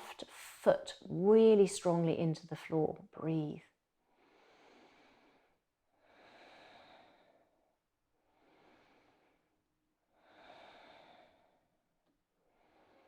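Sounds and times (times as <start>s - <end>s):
slow deep breathing: 4.1s - 11.8s, 12.4s - 13.0s.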